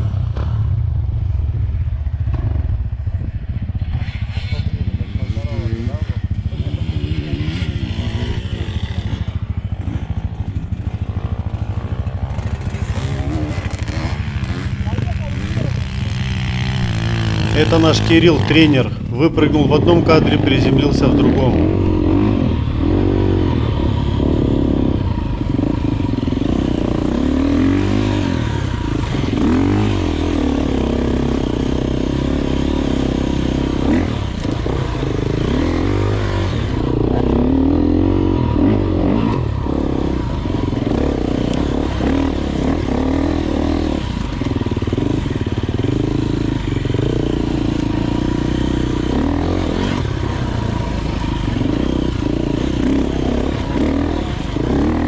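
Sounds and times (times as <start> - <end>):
motorcycle engine revving: 16.1 - 55.0.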